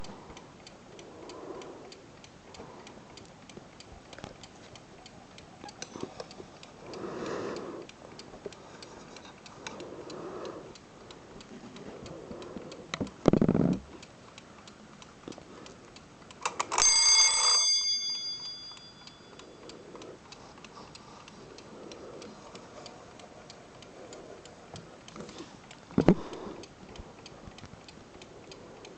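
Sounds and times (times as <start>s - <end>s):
alarm clock ticking: 0.0s - 28.9s
alarm bell ringing: 16.7s - 19.6s.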